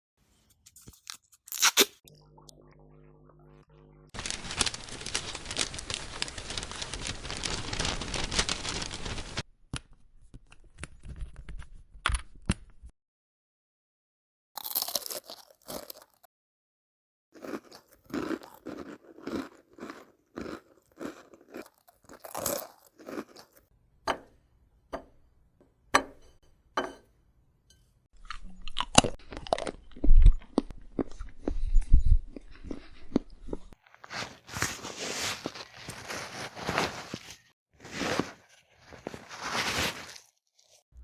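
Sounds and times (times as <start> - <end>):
chewing and crunching food: 14.6 - 16.3, 17.4 - 23.7, 28.2 - 37.2.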